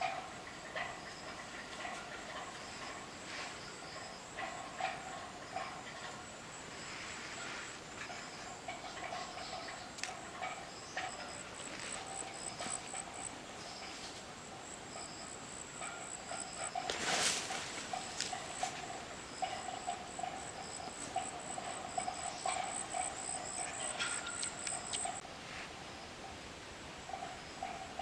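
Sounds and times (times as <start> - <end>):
lower pulsing insect chorus: 0.0 - 28.0
insect high-pitched trill: 14.8 - 25.2.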